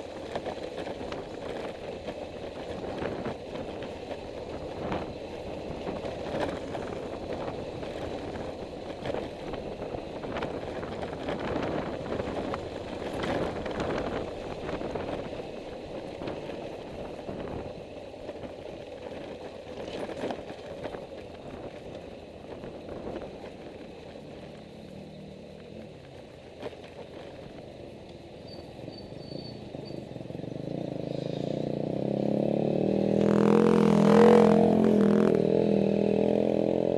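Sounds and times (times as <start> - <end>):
wind and road noise: 0.0 - 36.9
faint engine note: 30.9 - 32.4.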